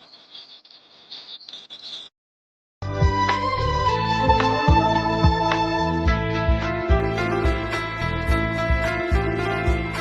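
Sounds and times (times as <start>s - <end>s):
music: 2.8s - 10.0s.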